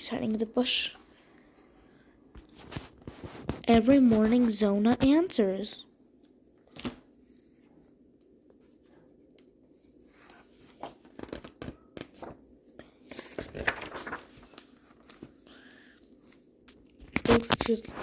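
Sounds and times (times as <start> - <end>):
book pages turning: 2.4 - 4.4, 6.2 - 7.6, 10.1 - 12.4, 13.1 - 17.9.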